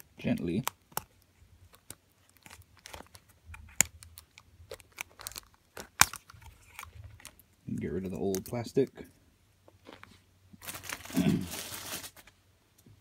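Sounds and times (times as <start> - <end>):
plastic crackles and clicks: 0.2 - 7.5
sharp plastic snaps: 0.3 - 7.4.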